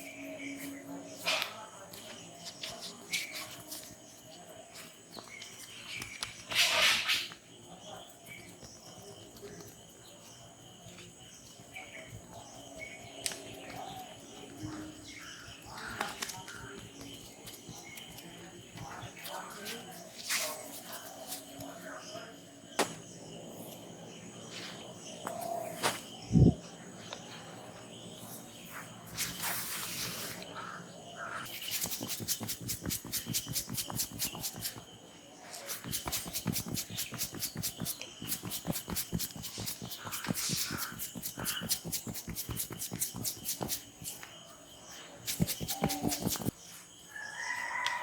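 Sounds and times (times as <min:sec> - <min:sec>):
birds chirping: 0:00.0 - 0:48.0
high insect hum: 0:00.0 - 0:48.0
hands rubbing rustle: 0:15.9 - 0:21.7, 0:28.8 - 0:30.5, 0:31.5 - 0:34.9, 0:35.5 - 0:44.3, 0:45.2 - 0:46.6.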